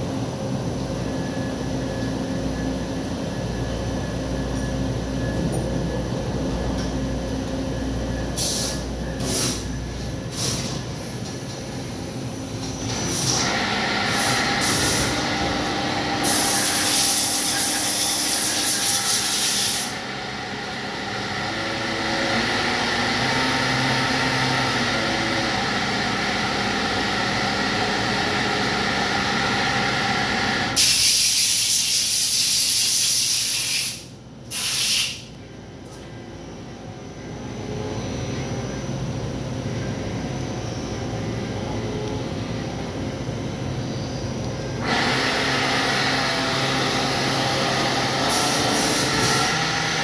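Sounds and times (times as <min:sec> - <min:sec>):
lathe spindle whine: 0:11.9 - 0:19.3, 0:36.7 - 0:50.0
loud hiss: 0:30.8 - 0:35.3.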